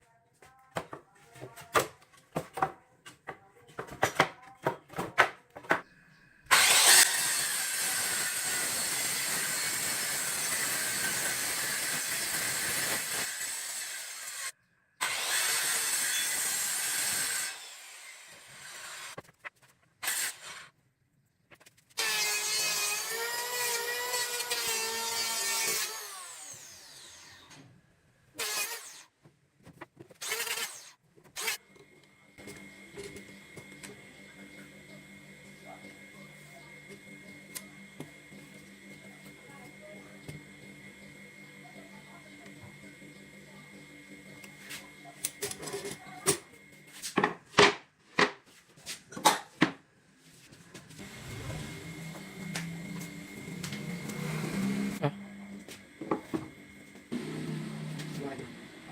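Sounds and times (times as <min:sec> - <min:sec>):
motor whining under load: 0:06.5 - 0:11.5, 0:30.2 - 0:46.9, 0:50.8 - 0:58.9
power tools cutting or sanding: 0:06.5 - 0:19.2, 0:20.0 - 0:20.7, 0:22.0 - 0:27.7, 0:28.4 - 0:29.1, 0:30.2 - 0:31.8, 0:51.0 - 0:58.9.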